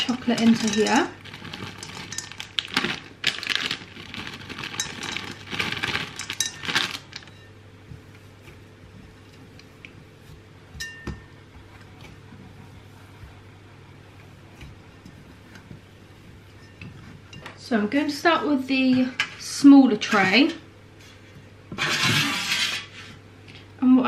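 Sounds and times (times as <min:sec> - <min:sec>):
chocolate chips clinking into bowl: 0:00.1 - 0:07.3.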